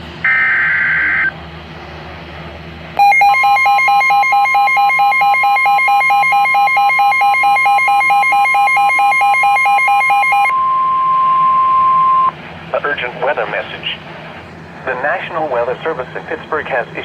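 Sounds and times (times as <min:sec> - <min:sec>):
steady high alarm tone: 0:00.2 - 0:01.4, 0:03.0 - 0:12.4
pulsing electronic alert beep: 0:00.3 - 0:01.3, 0:03.0 - 0:12.3
low radio hiss: 0:12.6 - 0:17.0.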